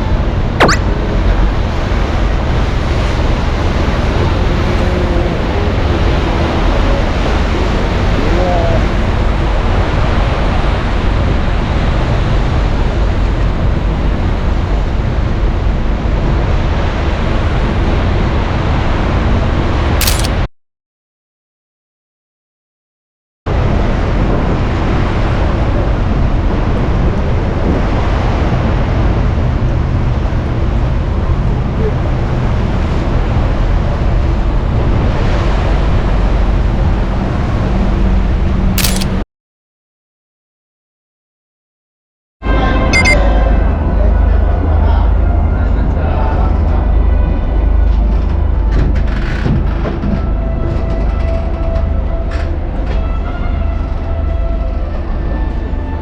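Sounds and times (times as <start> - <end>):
wind: 0.0 - 20.5, 23.5 - 39.2, 42.5 - 56.0
churning sea water: 0.1 - 19.7, 23.6 - 38.8
wind on microphone: 23.6 - 38.7.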